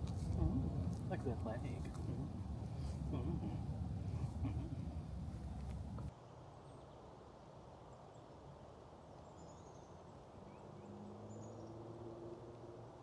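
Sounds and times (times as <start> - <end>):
faint low hum: 0.0 - 6.1.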